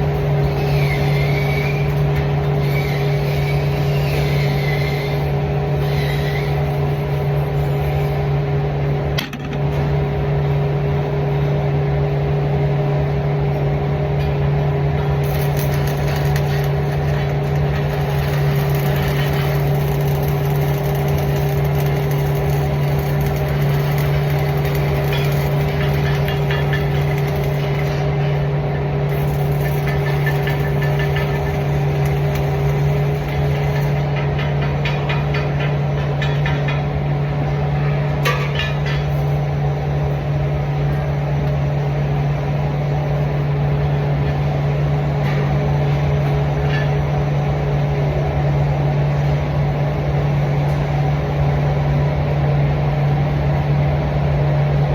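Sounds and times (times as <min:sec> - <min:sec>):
machine drone: 0:00.0 - 0:36.8.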